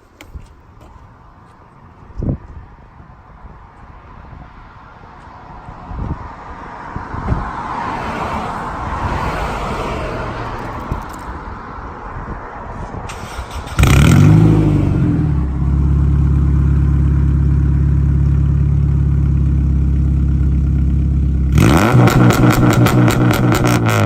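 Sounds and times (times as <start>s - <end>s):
car engine starting and idling: 13.0s - 24.0s.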